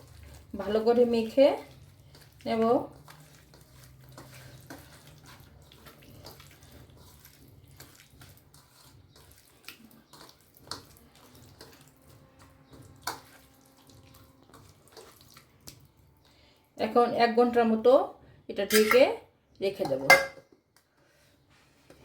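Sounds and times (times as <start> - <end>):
hands mixing wet marinade: 0.0 - 17.9.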